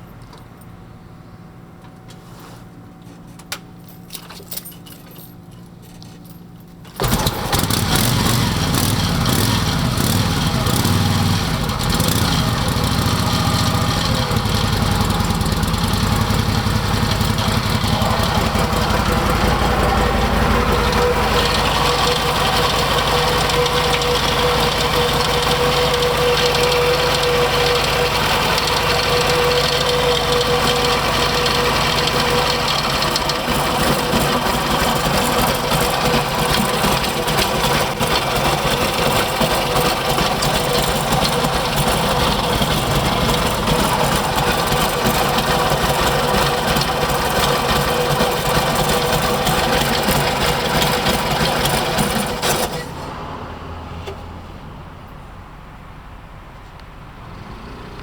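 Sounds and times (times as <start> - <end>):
motorcycle engine running: 6.9 - 52.8.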